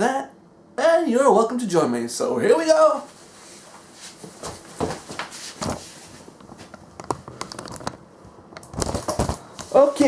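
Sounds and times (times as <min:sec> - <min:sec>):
objects knocking and tapping: 0:06.6 - 0:08.0, 0:08.6 - 0:09.7.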